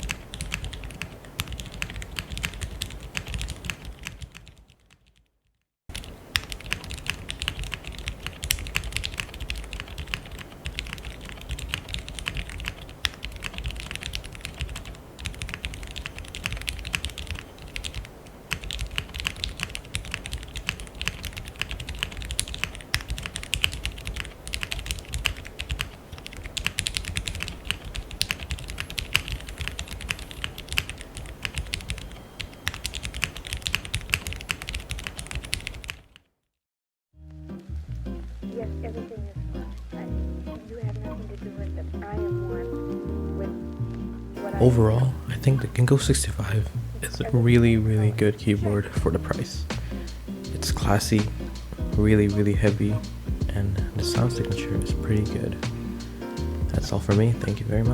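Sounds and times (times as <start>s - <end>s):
mechanical keyboard typing: 0.0s - 5.2s, 5.9s - 36.2s.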